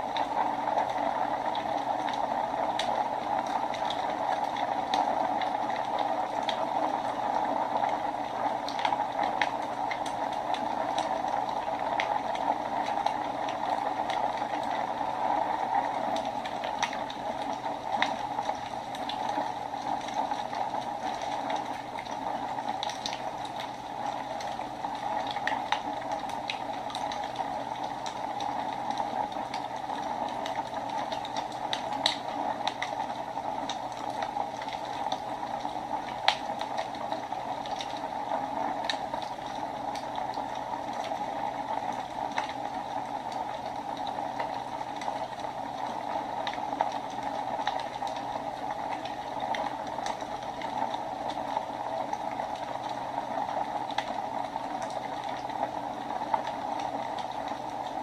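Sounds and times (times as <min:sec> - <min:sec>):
fire crackling and popping: 0:00.0 - 0:58.0.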